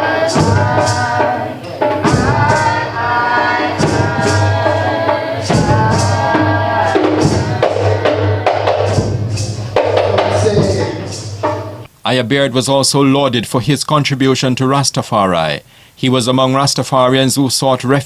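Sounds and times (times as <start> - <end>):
person singing: 0.0 - 9.0
percussion beat: 0.0 - 11.9.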